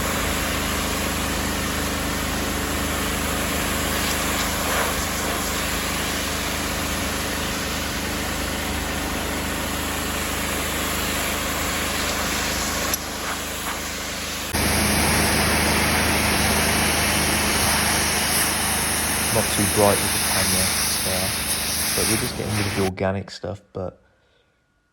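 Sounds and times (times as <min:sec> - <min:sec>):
pressure washer engine running: 0:00.0 - 0:22.9
water spraying onto brick: 0:00.0 - 0:22.9.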